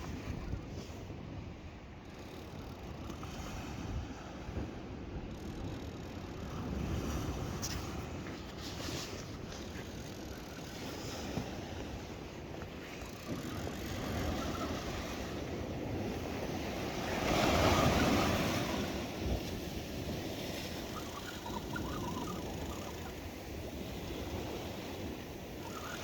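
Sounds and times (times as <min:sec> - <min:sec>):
wind buffeting microphone: 0:00.0 - 0:26.0
sea waves washing on shore: 0:06.3 - 0:26.0.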